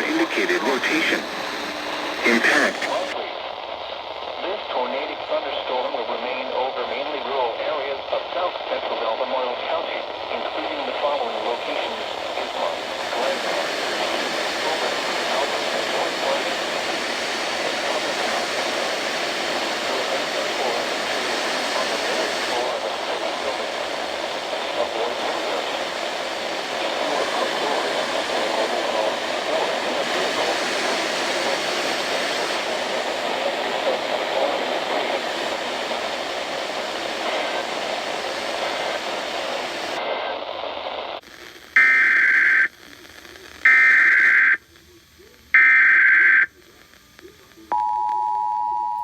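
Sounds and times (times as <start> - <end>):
steady hiss: 0.0 - 3.2, 10.6 - 40.0.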